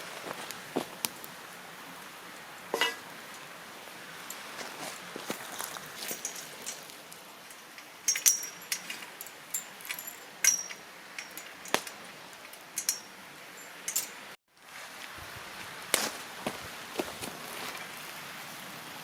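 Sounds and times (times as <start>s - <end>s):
steady low hiss: 0.0s - 19.0s
metal utensils clinking on cookware: 2.8s - 3.1s, 5.9s - 14.4s.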